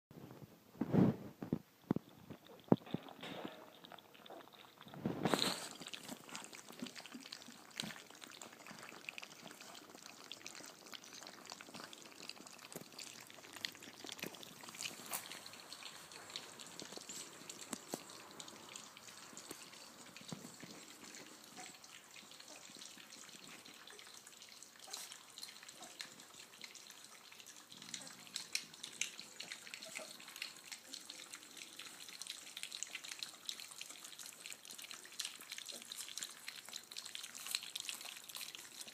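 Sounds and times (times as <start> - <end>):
puppies feeding wet clicking: 1.5 - 38.9.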